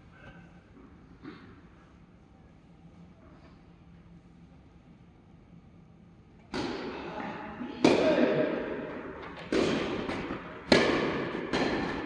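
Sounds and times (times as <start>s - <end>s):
tennis balls hit by rackets: 6.4s - 12.0s.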